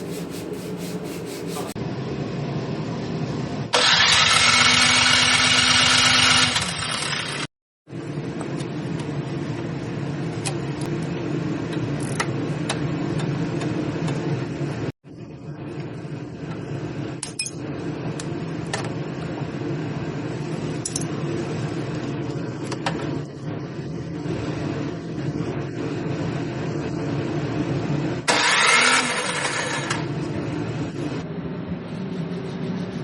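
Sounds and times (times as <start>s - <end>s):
small engine running: 3.8s - 7.5s, 28.3s - 30.0s.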